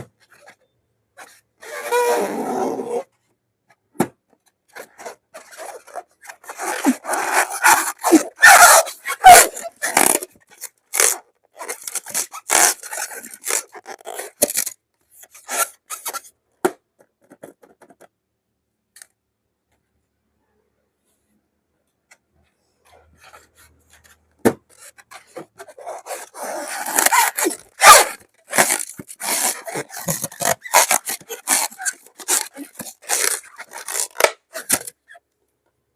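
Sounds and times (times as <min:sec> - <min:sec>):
slime balloons squishing: 0:06.5 - 0:14.6, 0:25.2 - 0:35.0.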